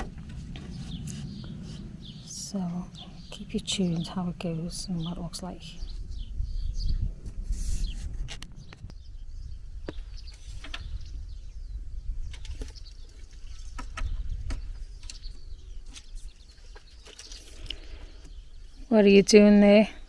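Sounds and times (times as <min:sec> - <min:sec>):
low rumble: 0:00.0 - 0:10.2
bird chirps: 0:00.2 - 0:07.1.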